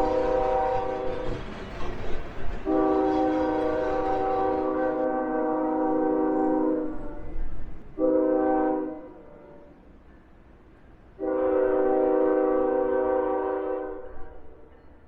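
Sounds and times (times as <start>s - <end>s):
locomotive air horn chord: 0.0s - 1.3s, 2.7s - 7.3s, 8.0s - 9.7s, 11.2s - 14.2s
low train rumble: 0.0s - 15.0s.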